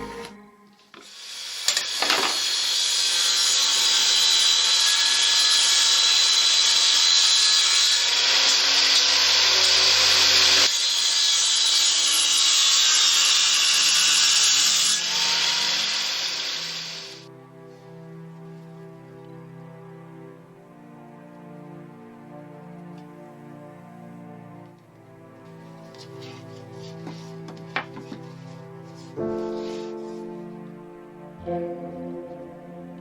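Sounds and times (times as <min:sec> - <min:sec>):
electric power tool cutting wood: 0:01.0 - 0:17.3.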